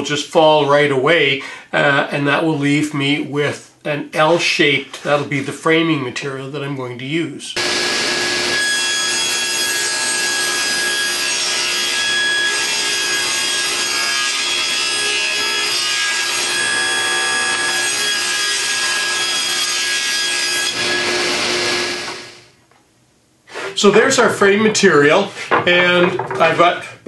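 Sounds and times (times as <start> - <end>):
table saw cutting wood: 7.6 - 22.5.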